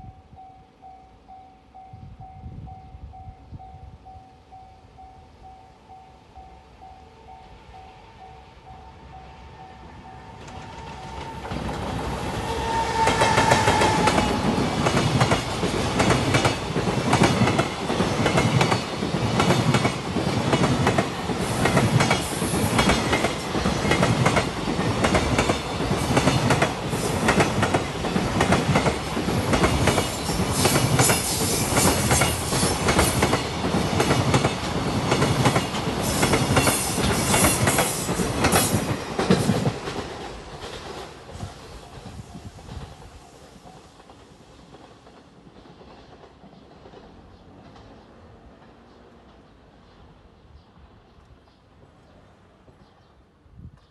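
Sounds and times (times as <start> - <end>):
freight train wheels clickety-clack: 9.8 - 52.0.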